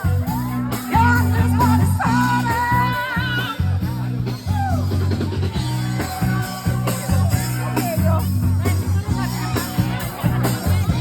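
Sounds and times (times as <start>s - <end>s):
bass and drum beat: 0.0s - 11.0s
guitar: 0.0s - 11.0s.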